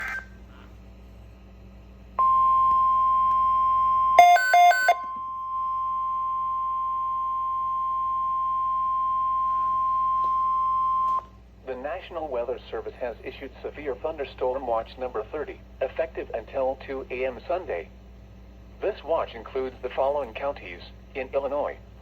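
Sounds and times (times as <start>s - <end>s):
low hum: 0.0s - 12.6s
steady warning alarm tone: 2.2s - 11.2s.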